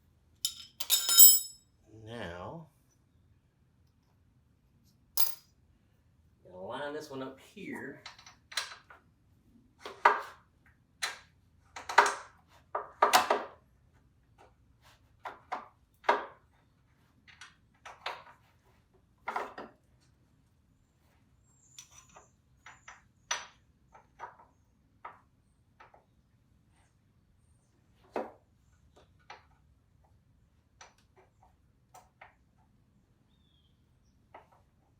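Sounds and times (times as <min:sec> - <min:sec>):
metal clinks and knocks of tools: 0:00.4 - 0:01.6, 0:05.2 - 0:05.4.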